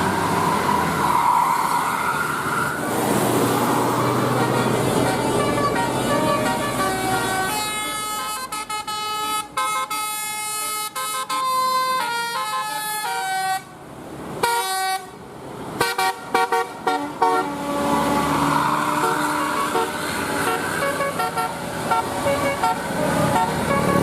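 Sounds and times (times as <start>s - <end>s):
engine and traffic noise: 0.0s - 24.0s
bus musical horn tune: 4.3s - 13.7s, 14.4s - 15.2s, 15.8s - 18.2s, 19.0s - 24.0s.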